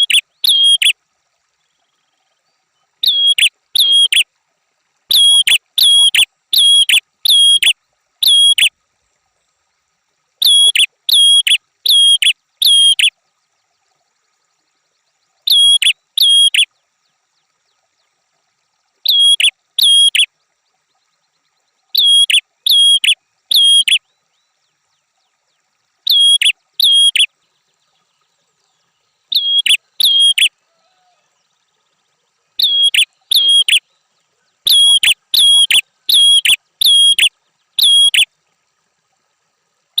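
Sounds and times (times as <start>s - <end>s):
songbird calling in sharp notes: 0.0s - 1.0s, 1.6s - 4.3s, 5.1s - 8.7s, 10.4s - 38.3s.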